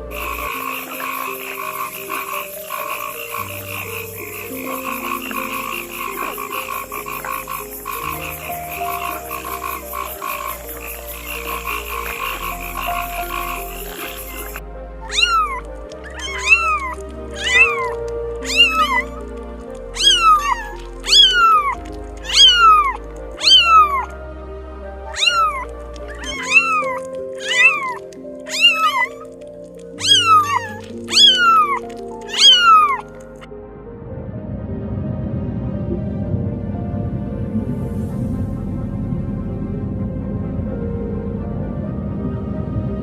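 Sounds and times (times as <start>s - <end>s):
background music: 0.0s - 43.0s
cat meowing: 9.0s - 24.1s, 25.1s - 33.5s.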